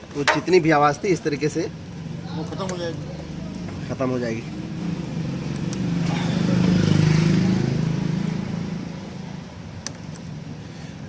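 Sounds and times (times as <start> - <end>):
vehicle engine passing by: 1.9 - 9.6.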